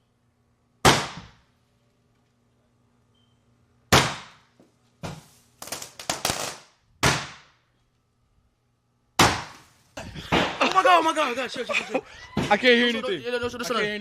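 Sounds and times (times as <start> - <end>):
fireworks banging indoors: 3.9 - 7.6, 9.2 - 10.8.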